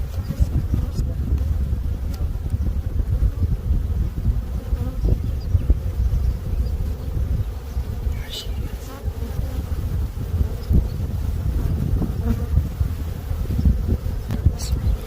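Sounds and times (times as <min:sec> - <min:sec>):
honeybees buzzing: 0:00.0 - 0:15.0.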